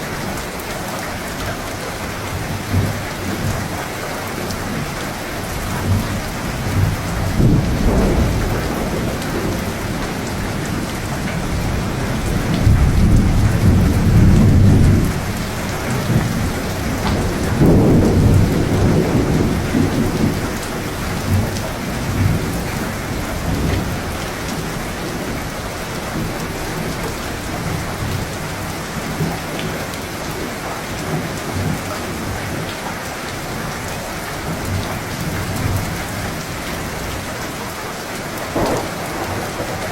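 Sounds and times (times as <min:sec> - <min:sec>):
steady rain falling: 0:00.0 - 0:39.9
rolling thunder: 0:04.6 - 0:30.5, 0:38.4 - 0:39.9.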